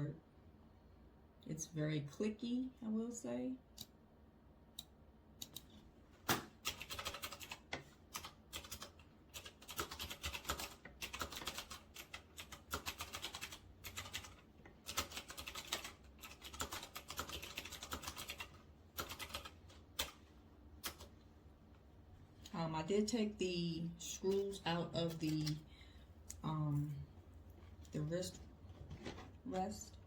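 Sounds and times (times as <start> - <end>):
clicky mechanical keyboard typing: 6.6 - 20.2, 20.8 - 21.1.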